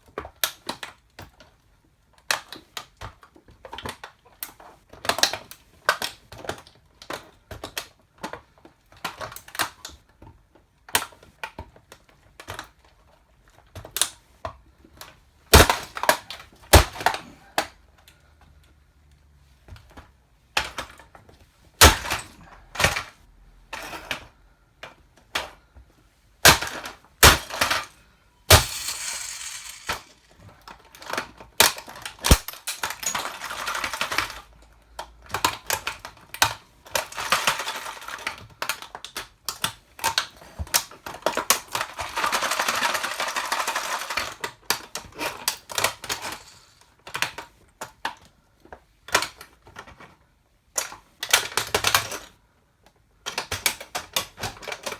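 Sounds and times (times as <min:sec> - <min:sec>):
toy car crushed under heel: 0:15.5 - 0:17.7, 0:21.8 - 0:23.1, 0:26.4 - 0:30.4, 0:31.0 - 0:34.5, 0:37.0 - 0:39.0, 0:41.2 - 0:47.4
crackling and crunching: 0:28.5 - 0:30.3.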